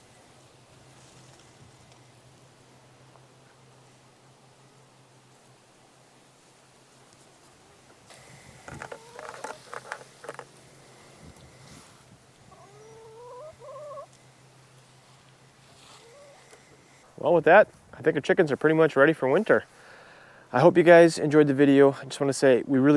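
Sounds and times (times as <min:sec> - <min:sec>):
chickens clucking: 0:07.7 - 0:15.0, 0:15.6 - 0:17.0.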